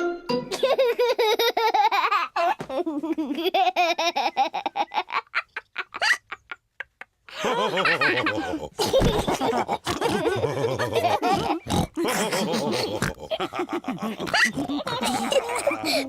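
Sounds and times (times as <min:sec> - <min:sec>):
cartoon characters laughing: 0:00.5 - 0:16.0.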